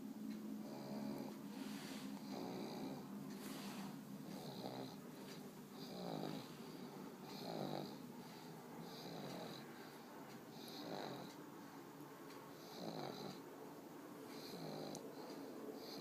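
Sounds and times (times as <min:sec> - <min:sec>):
dog snoring: 0:00.6 - 0:05.0, 0:05.8 - 0:09.7, 0:10.5 - 0:11.3, 0:12.6 - 0:13.4, 0:14.3 - 0:15.0, 0:15.8 - 0:16.0.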